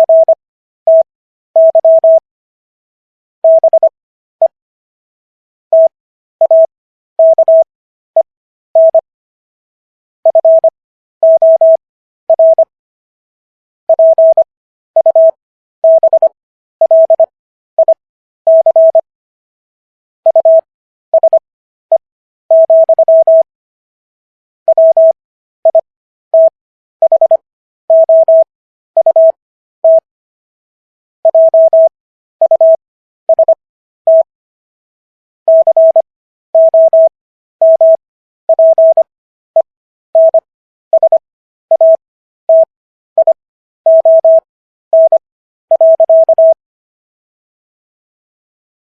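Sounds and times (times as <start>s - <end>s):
morse code tone: 0.0s - 2.2s, 3.4s - 4.6s, 5.8s - 7.7s, 10.3s - 12.7s, 13.9s - 19.0s, 20.3s - 21.4s, 22.5s - 23.5s, 24.7s - 30.1s, 31.3s - 34.3s, 35.5s - 36.0s, 36.6s - 46.6s.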